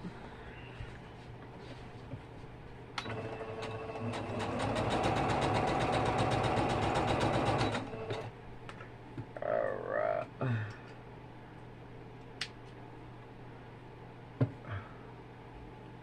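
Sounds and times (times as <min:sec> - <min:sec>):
electric sewing machine stitching: 0:03.0 - 0:08.3.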